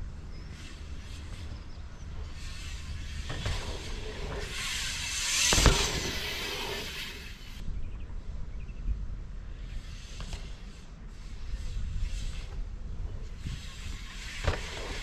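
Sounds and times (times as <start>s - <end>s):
bike tyres on sandy dirt: 0.0s - 15.0s
wind rumbling on microphone: 0.0s - 15.0s
bike landing thud: 3.2s - 6.9s, 14.4s - 15.0s.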